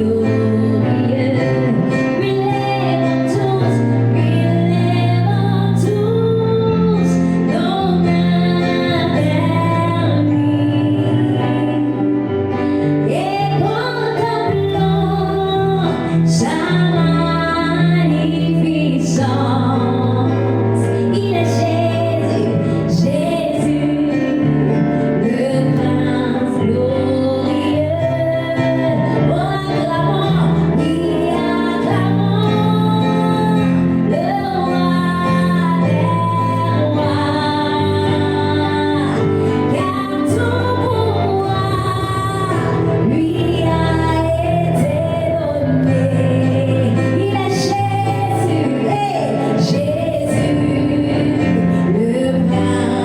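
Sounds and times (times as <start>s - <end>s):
woman singing: 0.0s - 53.0s.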